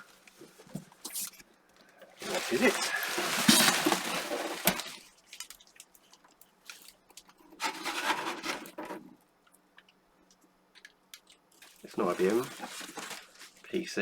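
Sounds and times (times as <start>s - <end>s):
packing material rustling: 2.2s - 6.1s, 7.6s - 8.8s, 11.6s - 13.9s.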